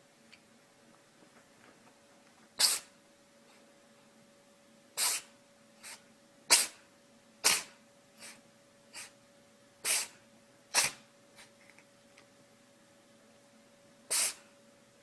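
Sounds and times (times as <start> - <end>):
animal sneezing: 2.6 - 3.0, 5.0 - 9.2, 9.8 - 11.5, 14.1 - 14.5.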